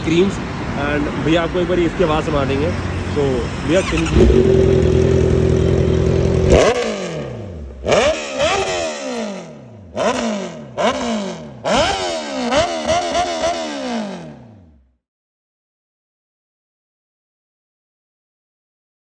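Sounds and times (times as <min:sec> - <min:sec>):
motorcycle engine revving: 0:02.7 - 0:14.9.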